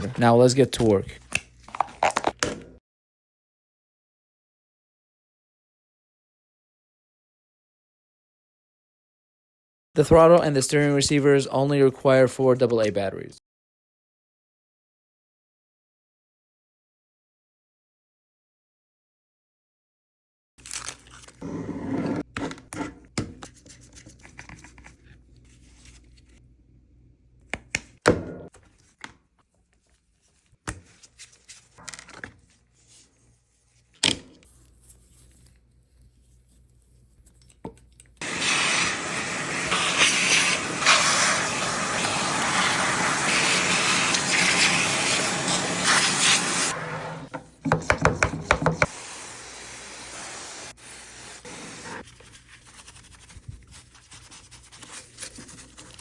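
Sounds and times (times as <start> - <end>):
loud steady hiss: 38.2 - 46.7.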